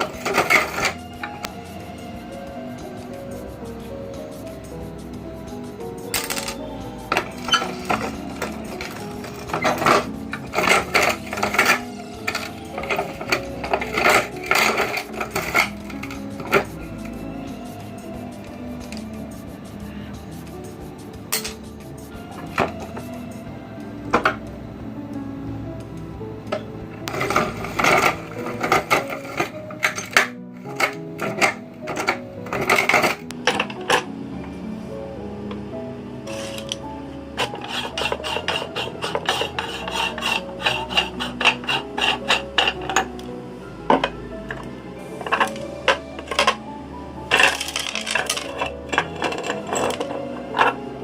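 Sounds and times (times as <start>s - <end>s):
background music: 0.0s - 51.0s
meat grinder grinding marbles: 37.4s - 42.9s.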